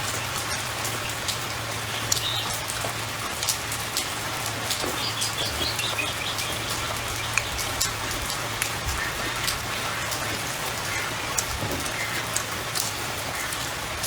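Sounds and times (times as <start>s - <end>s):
sharp drips: 0.0s - 14.0s
steady rain falling: 0.0s - 14.0s.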